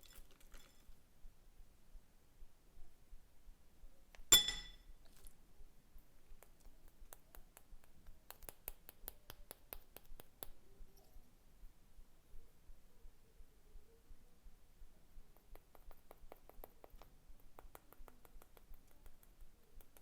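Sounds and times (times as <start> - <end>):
ringing clink of hard object: 4.3 - 4.9.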